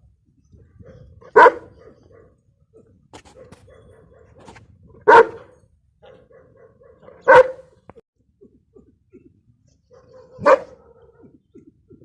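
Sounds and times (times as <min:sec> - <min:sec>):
dog barking: 0:00.8 - 0:02.4, 0:03.3 - 0:07.8, 0:09.8 - 0:11.4.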